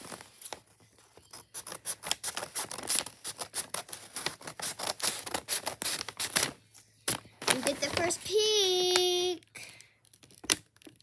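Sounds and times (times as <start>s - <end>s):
plastic crinkling: 0.0s - 11.0s
scissors cutting plastic package: 1.3s - 8.2s.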